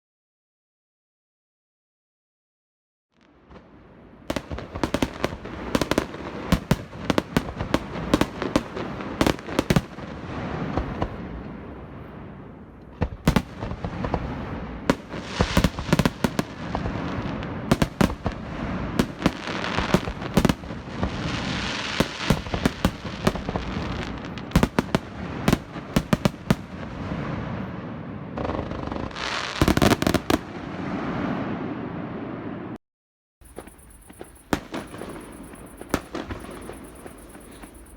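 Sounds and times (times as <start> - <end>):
fireworks bangs and crackling: 3.2 - 32.8, 33.4 - 37.9
fireworks hissing: 13.0 - 27.8, 28.4 - 30.5, 33.4 - 37.9.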